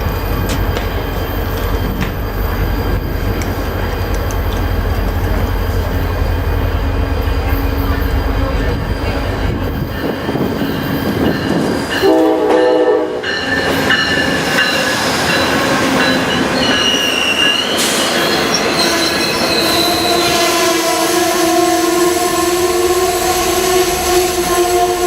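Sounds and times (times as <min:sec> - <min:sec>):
train wheels squealing: 0:00.1 - 0:03.4, 0:07.8 - 0:12.1, 0:13.3 - 0:21.1
train horn chord: 0:12.0 - 0:13.5, 0:19.9 - 0:25.0.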